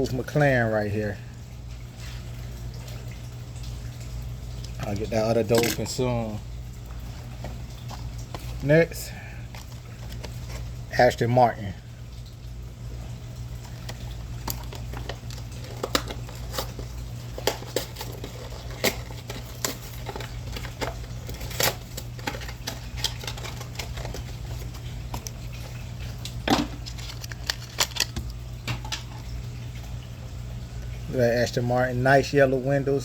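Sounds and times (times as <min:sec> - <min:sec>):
steady low hum: 0:00.0 - 0:33.0
plastic packaging clicks and crinkles: 0:09.5 - 0:10.8, 0:13.6 - 0:29.1.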